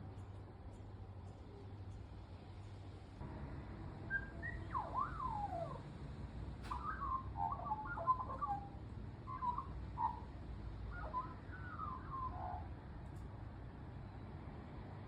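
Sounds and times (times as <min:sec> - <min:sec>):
magpie warbling: 0:06.7 - 0:10.3, 0:10.9 - 0:12.7.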